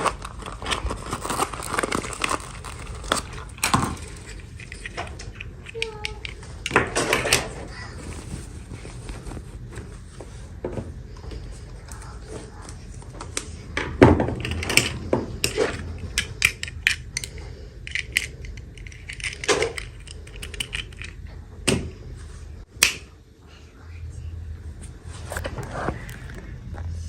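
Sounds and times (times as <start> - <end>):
plastic toy clicks and crinkling: 0.0 - 7.6, 14.4 - 21.2.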